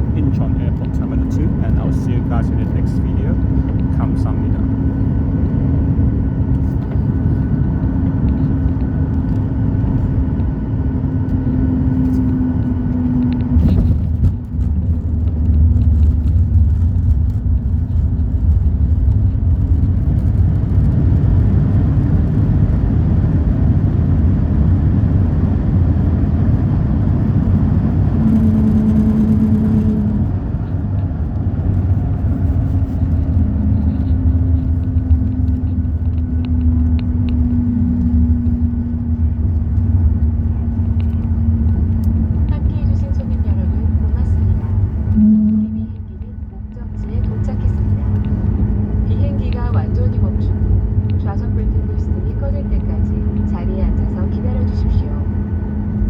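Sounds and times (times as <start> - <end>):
vehicle interior rumble: 0.0 - 56.0
constant tone: 25.9 - 56.0.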